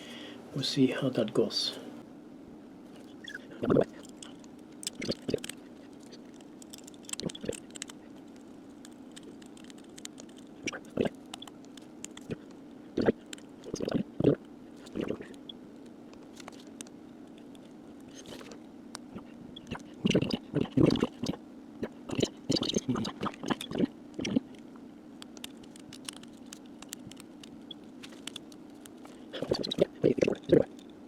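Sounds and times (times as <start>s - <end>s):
steady low hum: 0.0s - 31.0s
small parts clicking and tapping: 3.9s - 12.6s, 22.1s - 31.0s.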